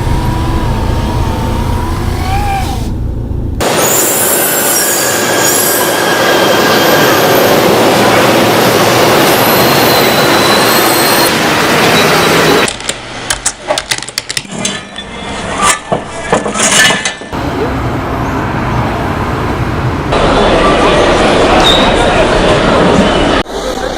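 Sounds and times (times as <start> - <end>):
loud train rumble: 0.0 - 13.4, 17.4 - 23.9.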